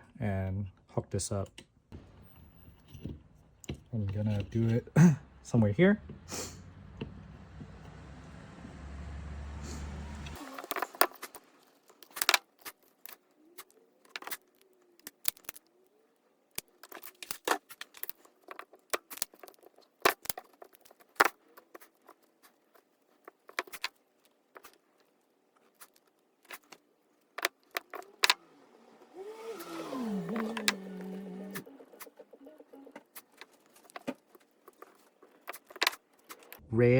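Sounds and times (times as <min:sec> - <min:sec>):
hand tools clicking and snipping: 0:10.3 - 0:15.8, 0:16.5 - 0:36.6
small parts being handled: 0:10.3 - 0:36.6.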